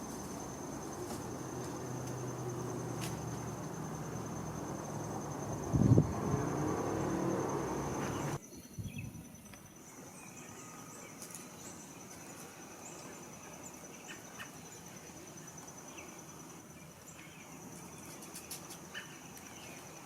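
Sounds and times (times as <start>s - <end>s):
insect trilling: 0.0s - 11.2s.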